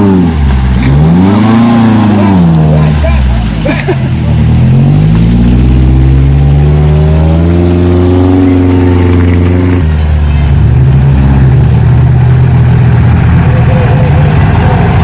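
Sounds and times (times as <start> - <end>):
vehicle engine under load: 0.0 - 15.0.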